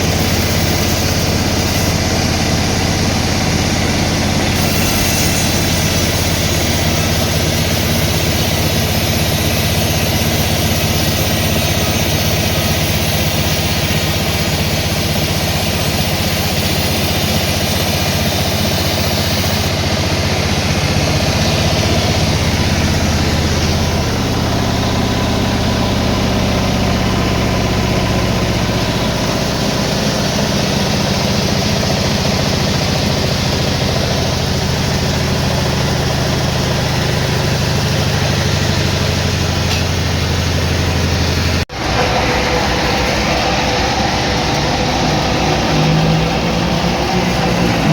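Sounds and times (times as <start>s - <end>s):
sawmill machinery droning: 0.0s - 47.9s.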